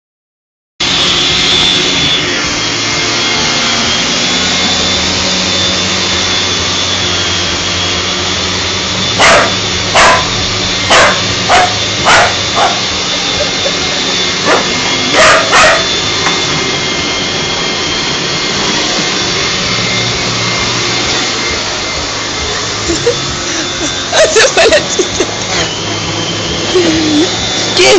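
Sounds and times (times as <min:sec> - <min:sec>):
vacuum cleaner running: 0:00.8 - 0:27.9
dog barking: 0:09.2 - 0:13.0, 0:14.4 - 0:16.0.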